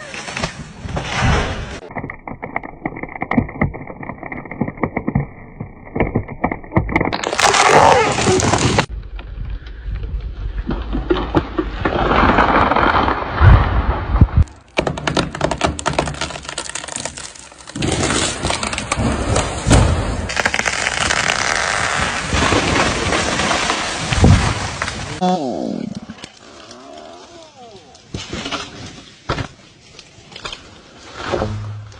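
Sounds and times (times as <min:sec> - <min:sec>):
wood cracking and splintering: 0:01.8 - 0:25.2
trees crashing to ground: 0:05.9 - 0:08.9, 0:10.6 - 0:25.2.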